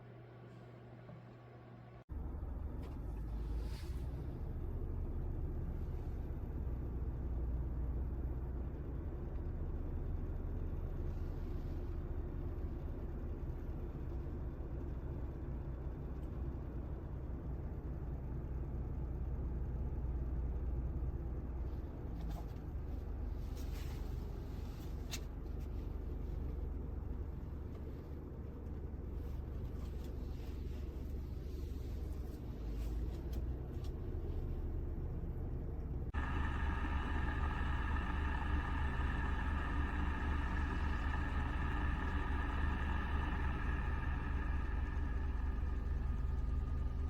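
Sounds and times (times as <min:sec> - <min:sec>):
vehicle cabin rumble: 0:35.8 - 0:47.0.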